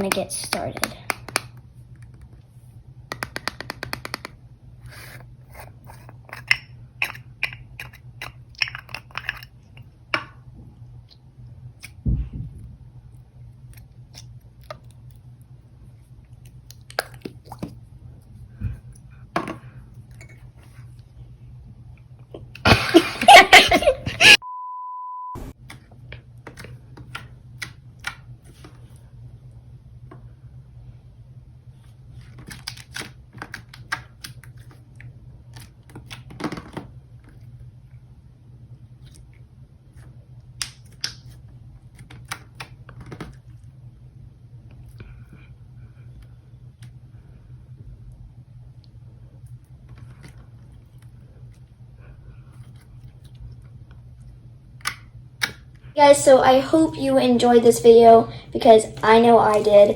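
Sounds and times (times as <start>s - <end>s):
steady beep: 24.4s - 25.6s.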